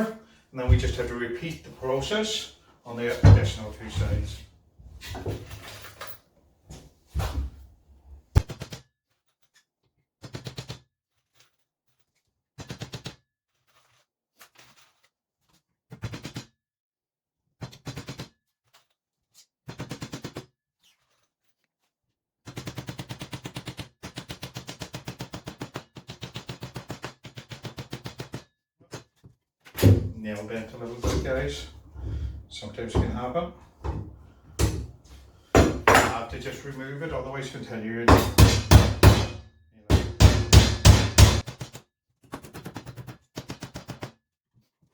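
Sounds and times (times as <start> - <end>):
hammering nails into wood: 29.8 - 36.6, 38.1 - 41.6.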